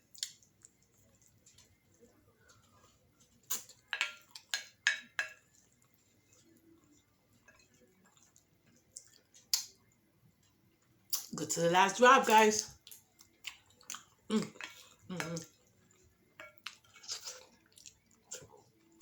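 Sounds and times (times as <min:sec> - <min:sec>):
eating clicks and smacks: 0:00.1 - 0:01.7, 0:03.4 - 0:05.4, 0:07.5 - 0:09.8, 0:12.8 - 0:15.6.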